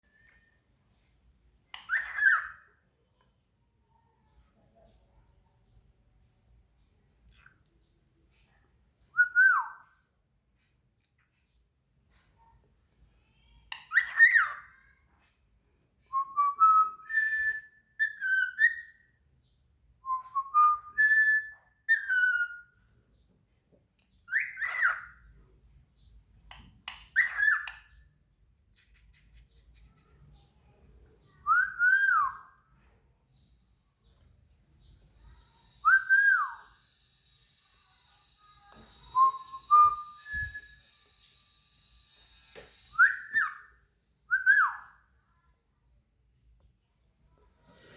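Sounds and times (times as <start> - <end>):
songbird singing whistled phrases: 1.7 - 2.7, 9.1 - 10.0, 13.7 - 14.8, 16.1 - 19.2, 20.0 - 22.8, 24.2 - 25.2, 27.1 - 28.0, 31.2 - 32.7, 34.1 - 36.9, 38.9 - 41.4, 42.9 - 45.1.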